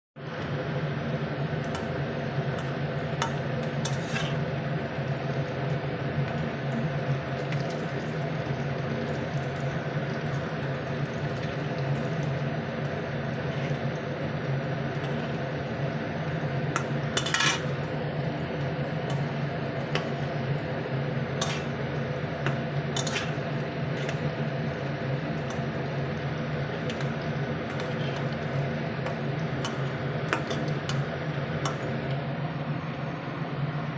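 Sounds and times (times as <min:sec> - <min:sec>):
food deep-frying in oil: 0:00.2 - 0:33.9
metal spoon scraping a pan: 0:03.8 - 0:04.5, 0:17.2 - 0:17.7, 0:21.4 - 0:21.8, 0:22.4 - 0:23.4.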